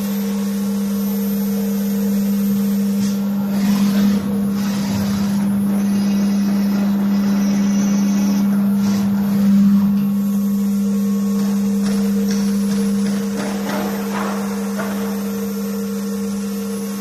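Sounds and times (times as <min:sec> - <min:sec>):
cnc machine motor hum: 0:00.0 - 0:17.0.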